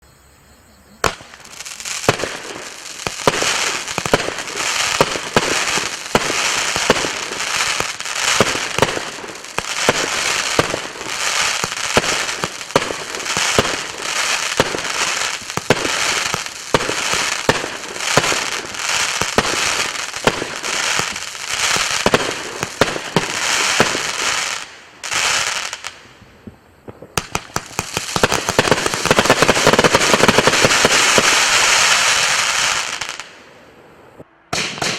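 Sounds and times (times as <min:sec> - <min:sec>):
firework launch shots and bursts: 0:01.0 - 0:24.7, 0:34.5 - 0:34.9
sharp firework cracks: 0:01.0 - 0:33.4, 0:34.5 - 0:34.9.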